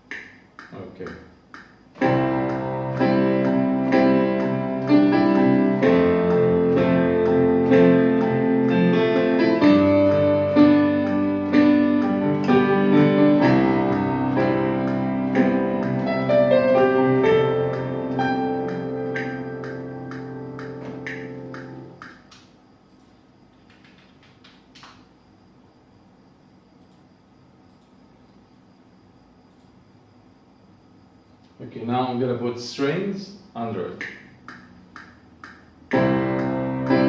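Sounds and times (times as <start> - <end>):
slow piano chords: 2.0 - 22.3, 35.4 - 37.0.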